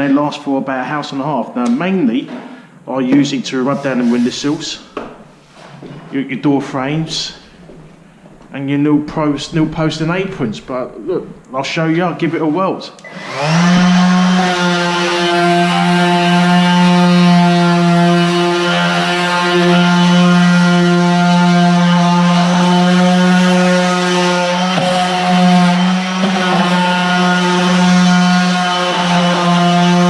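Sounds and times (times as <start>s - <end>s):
orbital sander running: 13.1s - 30.0s.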